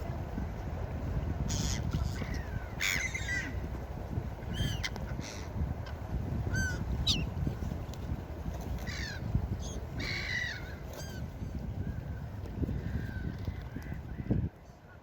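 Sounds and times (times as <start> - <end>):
seagulls calling: 1.5 - 3.6, 4.5 - 5.6, 8.8 - 14.4.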